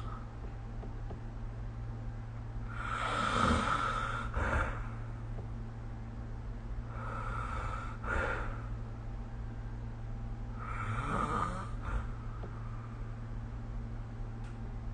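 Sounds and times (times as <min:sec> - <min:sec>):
steady low hum: 0:00.0 - 0:14.9
person snoring: 0:02.7 - 0:04.9, 0:10.6 - 0:12.2.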